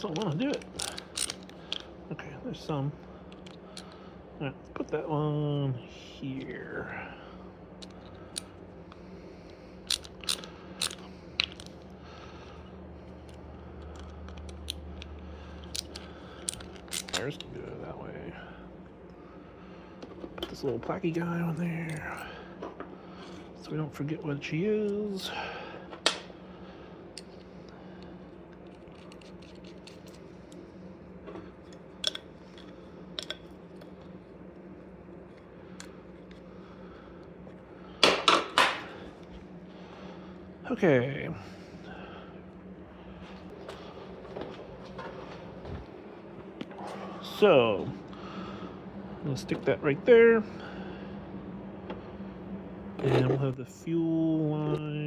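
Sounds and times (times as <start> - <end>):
hand tools clicking and tapping: 0.0 - 1.9
metal parts clicking: 0.0 - 2.0, 3.3 - 4.0, 7.8 - 8.5, 9.5 - 11.9, 13.2 - 17.6, 28.5 - 30.6, 31.6 - 34.1
low steady hum: 0.0 - 55.0.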